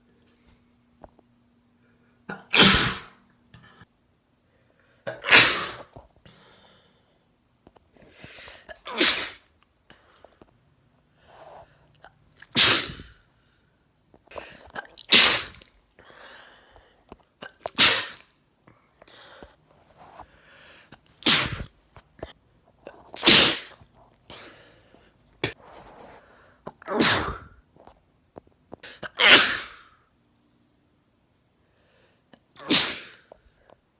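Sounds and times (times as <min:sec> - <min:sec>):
man sneezing: 0:02.3 - 0:03.2, 0:05.1 - 0:05.9, 0:08.8 - 0:09.4, 0:12.6 - 0:13.2, 0:14.7 - 0:15.6, 0:17.6 - 0:18.2, 0:21.2 - 0:21.7, 0:23.2 - 0:23.8, 0:26.9 - 0:27.6, 0:29.0 - 0:29.9, 0:32.6 - 0:33.3
faint breaths: 0:06.2 - 0:08.7, 0:15.9 - 0:17.4, 0:18.7 - 0:21.1, 0:24.3 - 0:26.6, 0:31.6 - 0:32.4.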